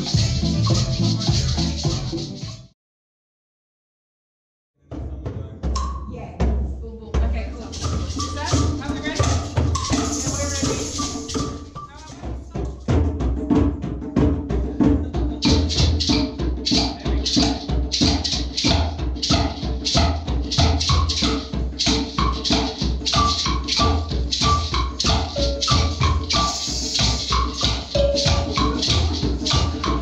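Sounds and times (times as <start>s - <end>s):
hand drums playing fast rhythm: 0.0s - 2.6s, 7.3s - 30.0s
shakers rattling: 0.0s - 2.7s, 7.6s - 12.6s, 15.4s - 30.0s.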